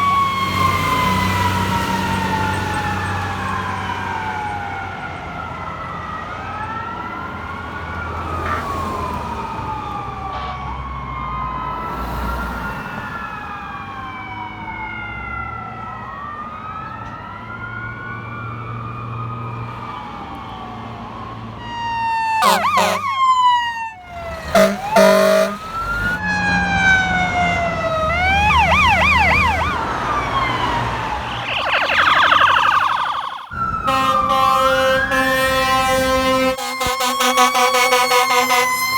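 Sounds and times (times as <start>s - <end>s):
fire engine sirens wailing: 0.0s - 38.9s
air horn blasts: 10.3s - 10.7s, 22.4s - 23.2s, 24.4s - 26.2s, 33.8s - 38.9s.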